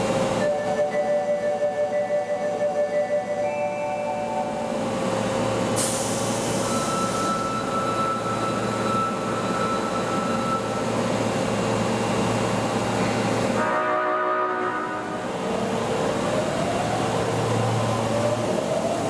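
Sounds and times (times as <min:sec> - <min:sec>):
train air hiss: 0:05.7 - 0:07.5
train horn blast: 0:13.6 - 0:15.3.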